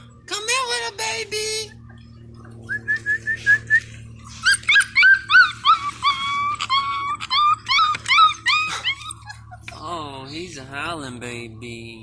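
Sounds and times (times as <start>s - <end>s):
puppy whimpering and crying: 4.2s - 10.4s
puppy howl-like wails: 4.4s - 9.6s.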